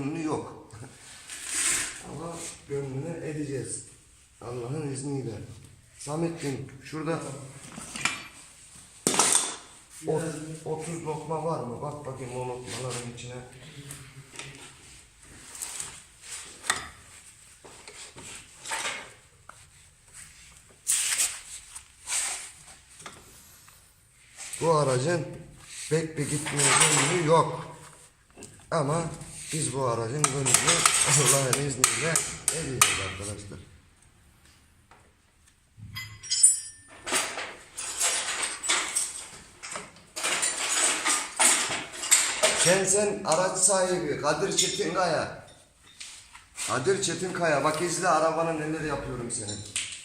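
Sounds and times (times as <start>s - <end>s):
metal scraping and clattering: 26.2s - 27.5s, 30.1s - 33.3s, 36.0s - 43.1s
tools rummaged in toolbox: 26.3s - 27.3s, 36.0s - 43.0s.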